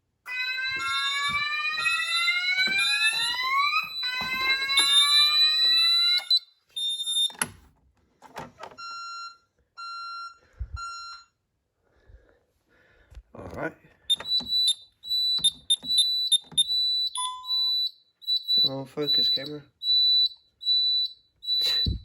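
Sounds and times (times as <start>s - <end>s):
fire alarm rising sweep tone: 0.3s - 7.3s, 14.1s - 22.0s
alarm panel buzzer beeps: 0.3s - 7.4s, 14.1s - 22.0s.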